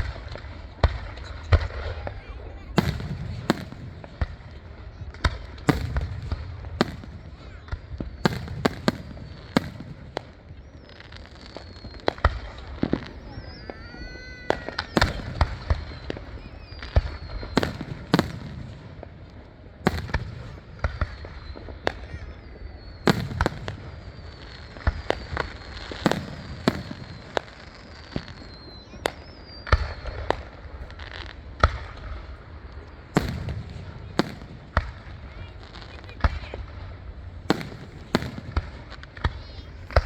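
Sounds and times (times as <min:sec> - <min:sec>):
firework bangs and pops: 0:00.0 - 0:40.0
firework whistles sliding down: 0:10.6 - 0:17.8, 0:20.8 - 0:31.2.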